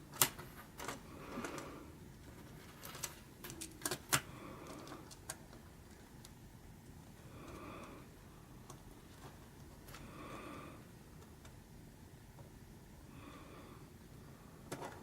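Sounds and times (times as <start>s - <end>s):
plastic pieces clicking: 2.8s - 5.5s.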